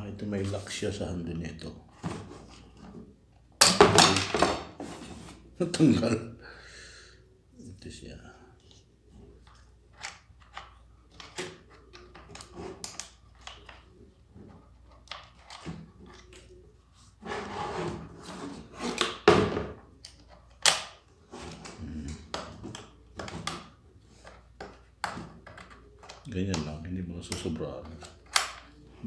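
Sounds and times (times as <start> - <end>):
plastic parts clicking and knocking: 3.6 - 4.8, 9.4 - 16.6, 18.6 - 29.0.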